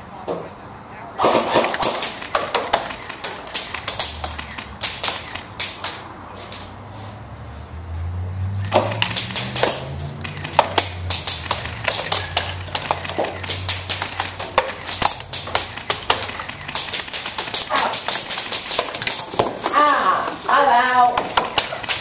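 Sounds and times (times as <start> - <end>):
airsoft guns firing: 1.2 - 6.0, 8.7 - 19.6.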